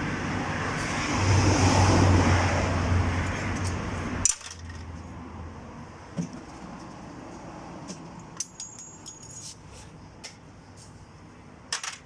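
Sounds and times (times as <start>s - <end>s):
light metallic clinks: 8.4s - 9.8s.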